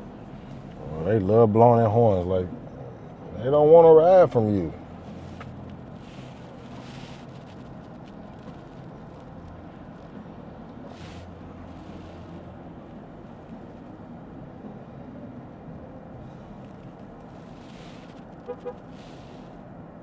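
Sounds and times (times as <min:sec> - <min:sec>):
car engine and tyre hum: 0:00.0 - 0:20.0
hiss of wet road: 0:05.0 - 0:08.2, 0:10.9 - 0:14.0, 0:16.2 - 0:19.6.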